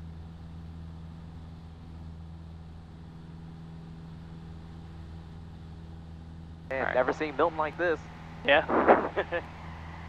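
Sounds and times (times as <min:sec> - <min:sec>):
small plane engine humming in cabin: 0:00.0 - 0:10.0.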